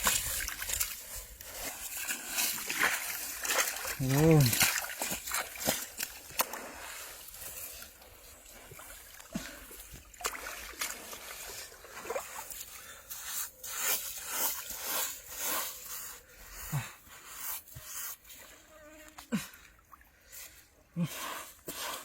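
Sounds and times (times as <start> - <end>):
water splashing and sloshing: 0.0 - 16.6.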